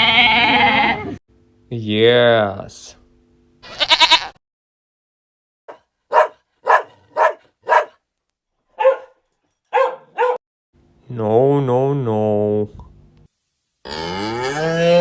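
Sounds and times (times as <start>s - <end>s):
dog barking: 5.7s - 8.0s, 8.8s - 10.4s.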